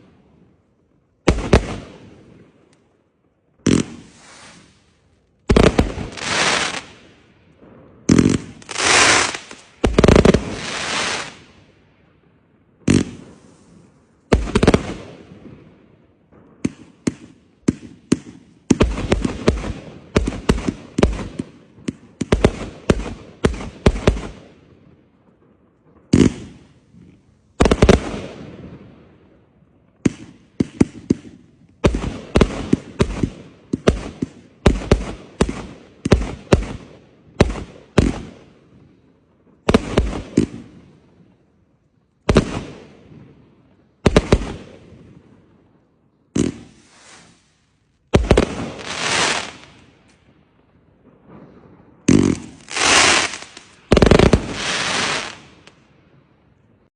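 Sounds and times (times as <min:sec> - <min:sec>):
fireworks bangs: 0:01.2 - 0:02.7, 0:03.6 - 0:11.8, 0:12.8 - 0:24.6, 0:25.2 - 0:41.4, 0:42.2 - 0:45.6, 0:46.3 - 0:56.3
firework sharp cracks: 0:01.3 - 0:03.0, 0:03.6 - 0:11.8, 0:12.8 - 0:15.7, 0:16.3 - 0:24.6, 0:26.0 - 0:28.9, 0:30.0 - 0:38.8, 0:39.5 - 0:41.1, 0:42.3 - 0:43.4, 0:44.0 - 0:45.4, 0:46.3 - 0:55.9
crackling hiss: 0:03.7 - 0:07.2, 0:08.1 - 0:11.6, 0:46.4 - 0:50.2, 0:52.1 - 0:55.8.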